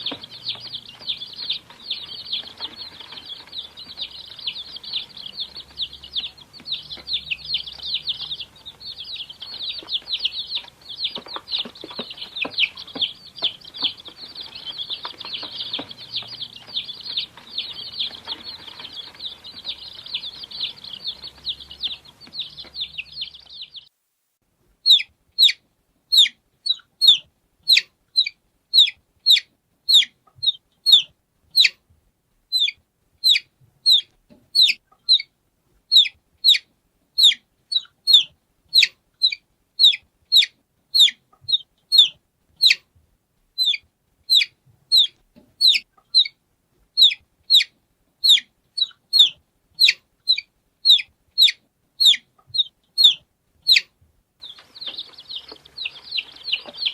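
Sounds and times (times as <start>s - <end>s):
chicks cheeping in chorus: 0.0s - 23.9s, 24.8s - 31.8s, 32.5s - 35.3s, 35.9s - 42.8s, 43.6s - 46.4s, 47.0s - 56.9s
loud single chick peeps: 24.8s - 31.8s, 32.5s - 35.3s, 35.9s - 42.8s, 43.6s - 46.4s, 47.0s - 56.9s.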